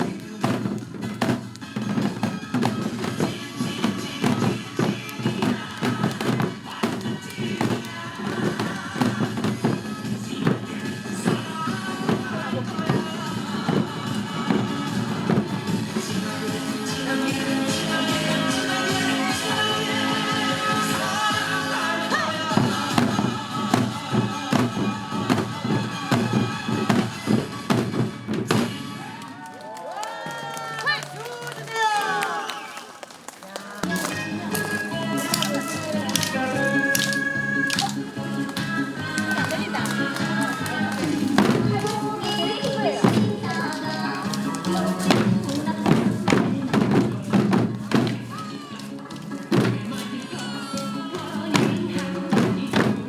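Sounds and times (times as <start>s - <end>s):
recorded backing music: 0.0s - 29.4s, 33.8s - 53.0s
hourglass drums struck in fast pattern: 34.0s - 48.1s.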